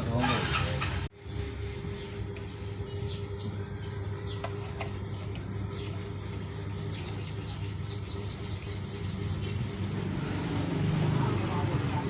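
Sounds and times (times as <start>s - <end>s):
steady low hum: 1.0s - 12.0s
bird chirping: 6.8s - 10.3s.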